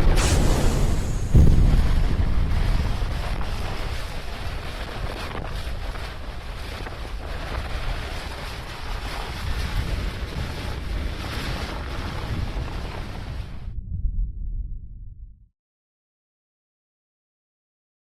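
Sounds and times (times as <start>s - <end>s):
rushing wind-like noise: 0.0s - 15.1s
heavy low rumble: 0.0s - 15.5s.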